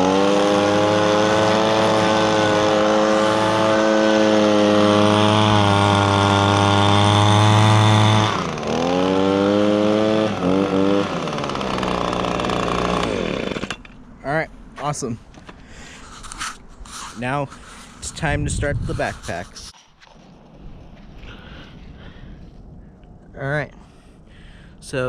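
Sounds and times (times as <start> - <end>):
leaf blower engine revving: 0.0 - 13.9.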